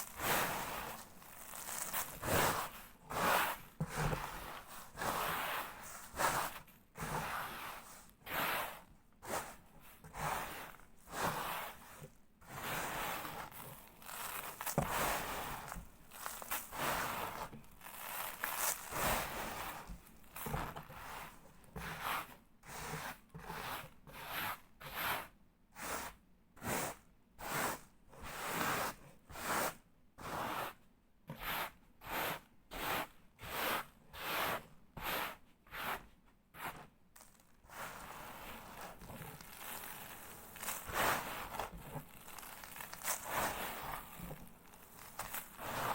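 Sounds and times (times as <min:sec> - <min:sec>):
sand crunching on cardboard: 0:00.0 - 0:22.1, 0:31.4 - 0:45.9.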